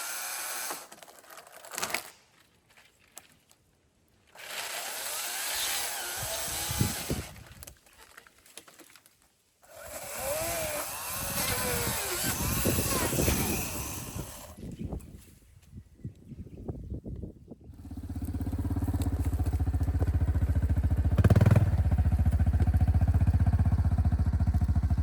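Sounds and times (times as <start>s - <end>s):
chainsaw cutting timber: 0.0s - 2.1s, 4.3s - 7.4s, 9.6s - 14.6s.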